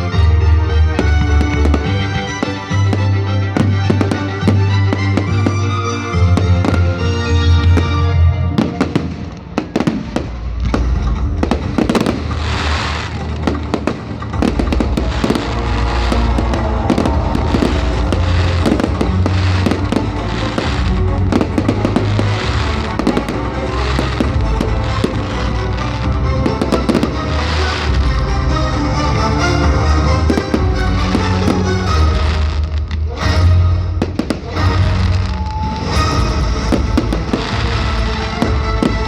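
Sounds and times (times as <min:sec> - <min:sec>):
fireworks bangs and crackles: 0:00.9 - 0:39.0
loud music with heavy bass: 0:10.7 - 0:35.1.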